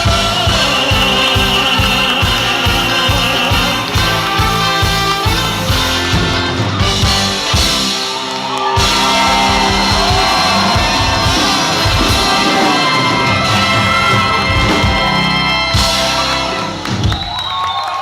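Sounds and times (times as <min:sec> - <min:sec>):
drum kit: 0:00.0 - 0:17.6
big band playing pop song: 0:00.0 - 0:17.7.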